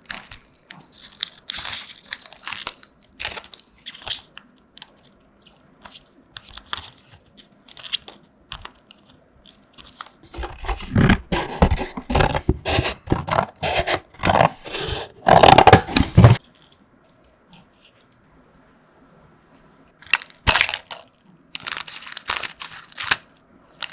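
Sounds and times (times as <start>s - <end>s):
snack packet crinkling and crunching: 0.0s - 16.3s, 20.1s - 23.9s
packet tearing: 10.3s - 16.4s, 21.6s - 23.9s.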